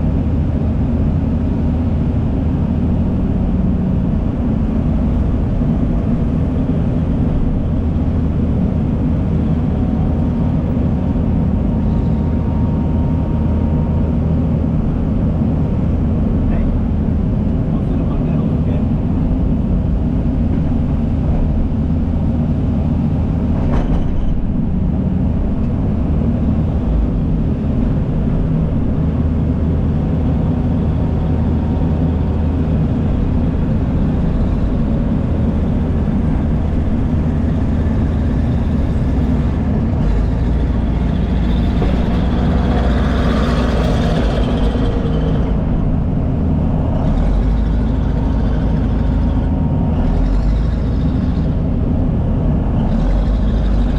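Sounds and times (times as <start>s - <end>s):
heavy diesel engines running: 0.0s - 53.9s.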